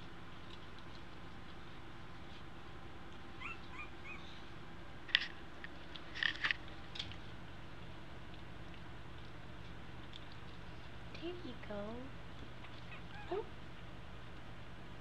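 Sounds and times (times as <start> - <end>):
steady low hum: 0.0 - 15.0
puppies squeaking and whimpering: 3.4 - 4.4, 12.6 - 13.5.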